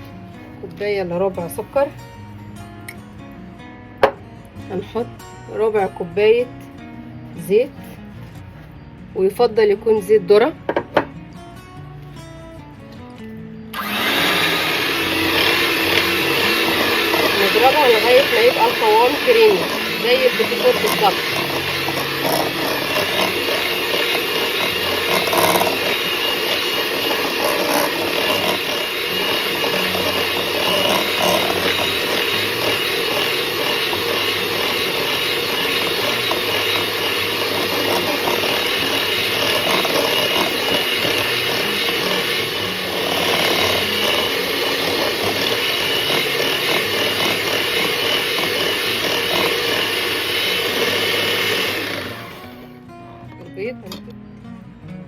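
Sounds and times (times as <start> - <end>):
electric mixer running: 13.7 - 52.8.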